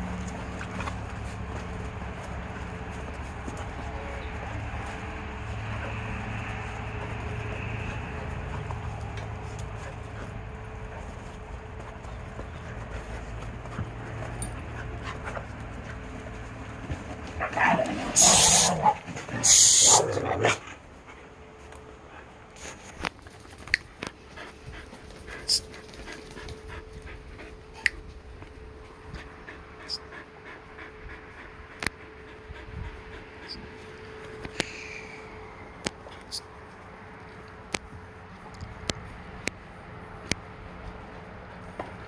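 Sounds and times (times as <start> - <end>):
harsh dog scuffle: 0.0 - 28.0
dogs panting: 0.0 - 42.0.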